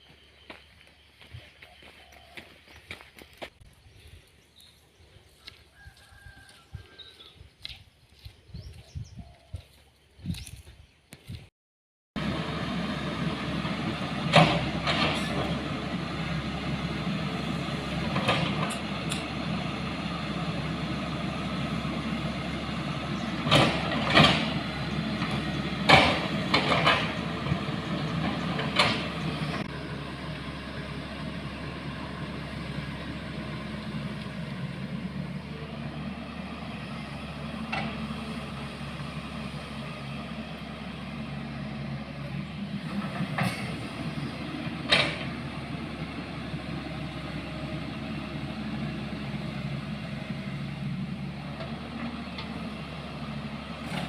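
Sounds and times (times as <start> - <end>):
vehicle engine running: 12.2 - 54.0.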